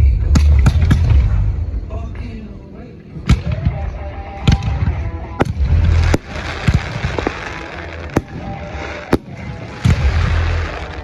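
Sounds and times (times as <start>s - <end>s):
fireworks bangs: 0.0s - 2.1s, 3.2s - 11.0s
fireworks hiss: 4.9s - 11.0s.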